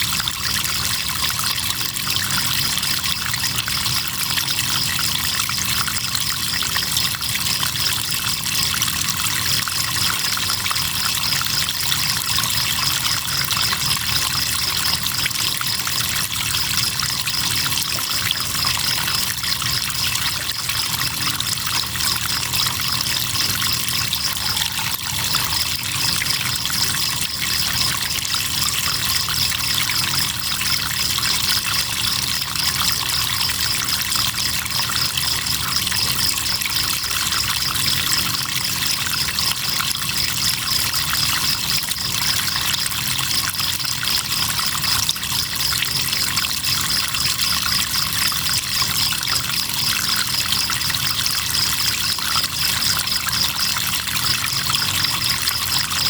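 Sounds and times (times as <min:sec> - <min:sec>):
crickets chirping: 0:00.1 - 0:56.0
river water flowing: 0:10.5 - 0:33.7.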